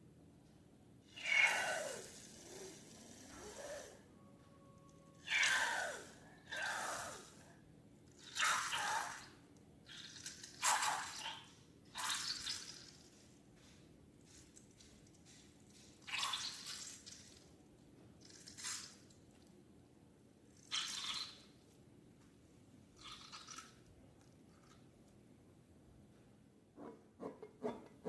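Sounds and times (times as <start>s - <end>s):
squelchy slime squeezing: 8.2s - 13.0s.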